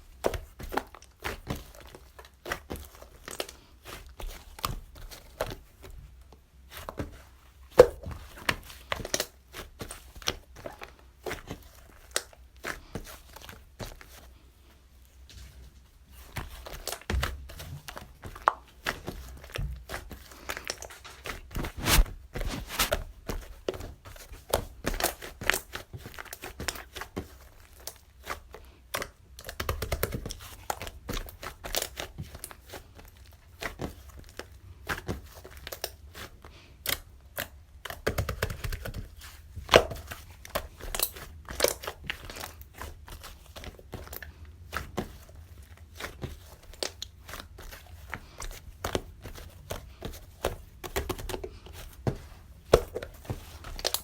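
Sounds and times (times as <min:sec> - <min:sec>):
crinkly material rustling and tearing: 0:15.5 - 0:28.8.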